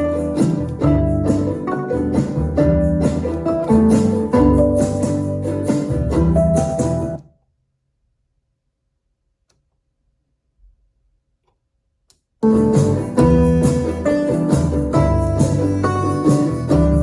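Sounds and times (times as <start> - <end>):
music with guitar and keyboard: 0.0 - 7.2, 12.4 - 17.0.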